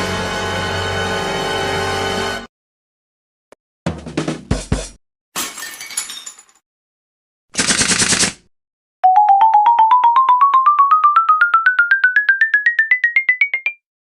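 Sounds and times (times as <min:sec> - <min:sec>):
short rattling burst: 0:07.6 - 0:08.5.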